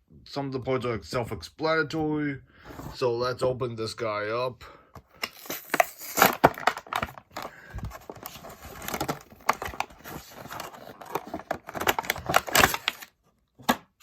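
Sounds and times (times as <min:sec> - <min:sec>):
packaging crinkling and tearing: 0:05.2 - 0:13.2.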